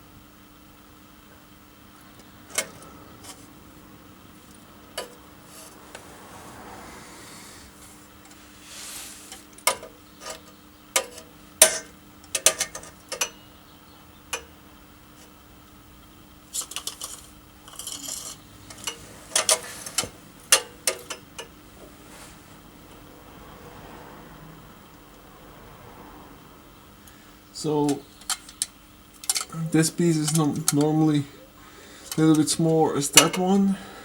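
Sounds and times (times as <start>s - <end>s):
faint steady hum: 0.0s - 34.0s
metal parts and tools clinking: 9.3s - 13.4s, 16.5s - 21.5s, 27.8s - 31.1s.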